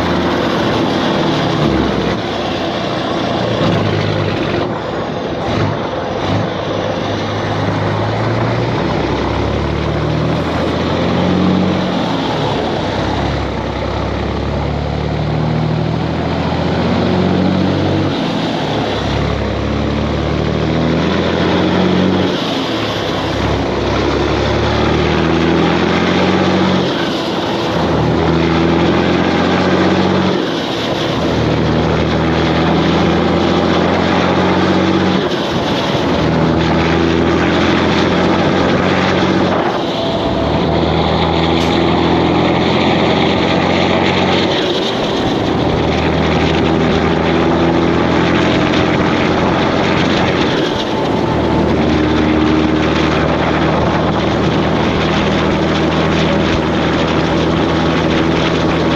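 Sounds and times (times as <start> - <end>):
diesel truck engine running: 0.0 - 58.9
road and wind noise: 0.0 - 58.9.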